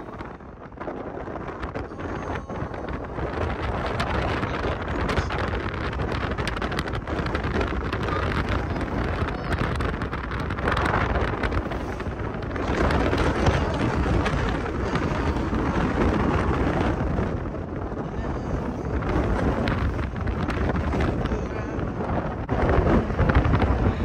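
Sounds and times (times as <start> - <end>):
wind buffeting microphone: 0.0 - 24.0.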